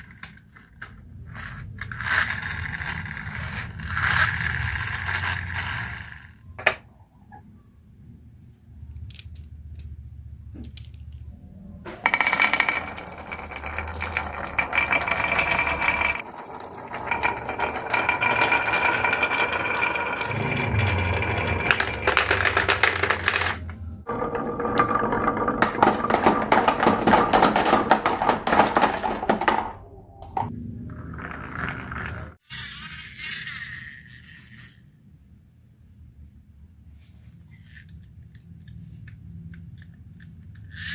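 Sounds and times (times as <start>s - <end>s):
marbles rolling down wooden tracks: 0.0s - 6.4s, 11.9s - 34.8s.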